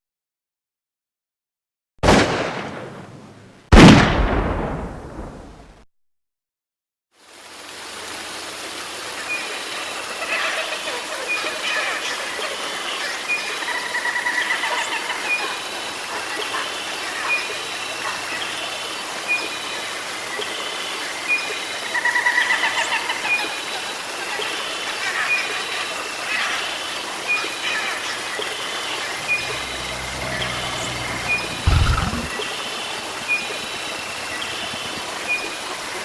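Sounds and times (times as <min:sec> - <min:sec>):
birds chirping: 0:28.9 - 0:32.3.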